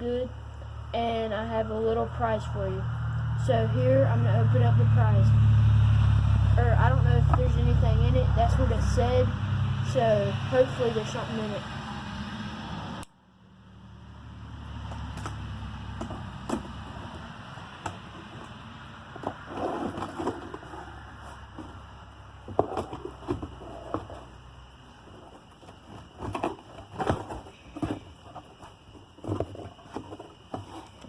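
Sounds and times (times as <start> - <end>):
box contents being handled: 19.1 - 21.9.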